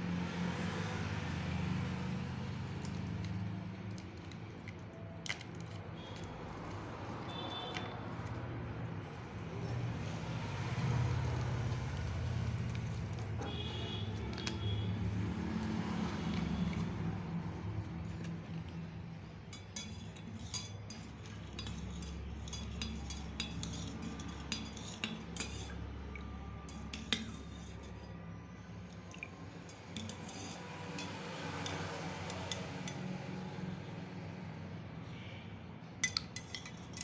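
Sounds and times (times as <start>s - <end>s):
spoon clinking on cookware: 19.5s - 25.8s, 26.6s - 28.1s, 29.2s - 33.0s, 36.0s - 37.0s.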